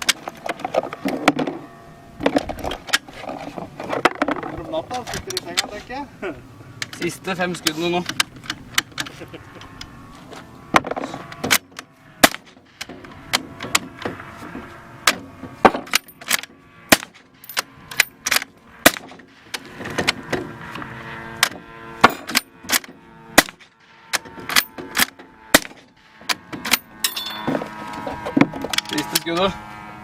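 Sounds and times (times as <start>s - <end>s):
suppressed gunshots: 10.8s - 13.9s, 15.0s - 17.3s, 17.9s - 19.6s, 22.0s - 23.7s, 24.5s - 26.8s.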